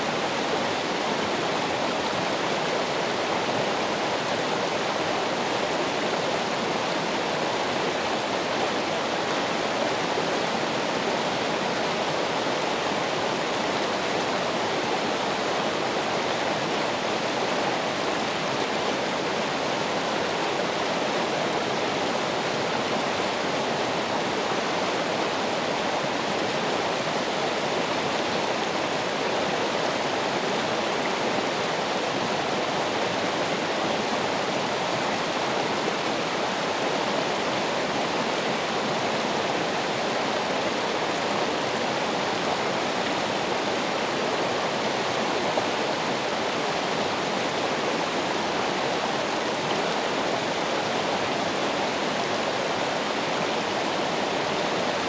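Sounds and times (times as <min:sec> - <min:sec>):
running water rushing: 0:00.0 - 0:55.0.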